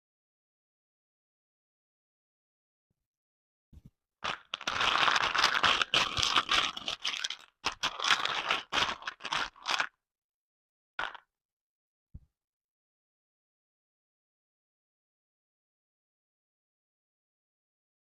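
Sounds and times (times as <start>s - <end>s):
packaging tearing and crinkling: 4.3s - 9.9s.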